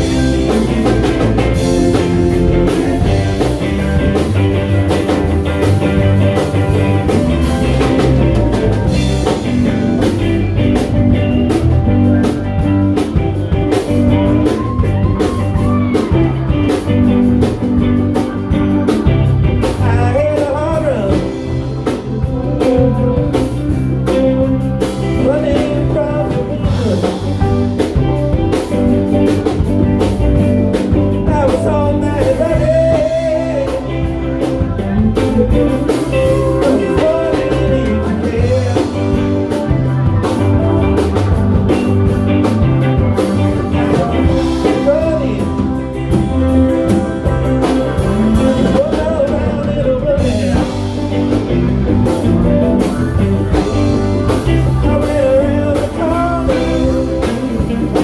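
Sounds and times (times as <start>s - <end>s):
live rock band playing: 0.0s - 58.0s.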